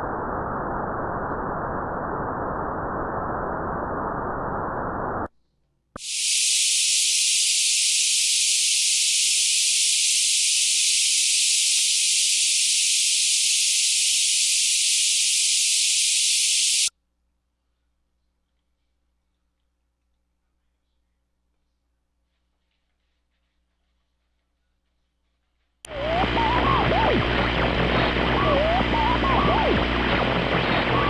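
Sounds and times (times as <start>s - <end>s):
click: 6.0s - 6.2s, 7.8s - 13.1s
bright high-pitched hiss: 6.0s - 16.9s.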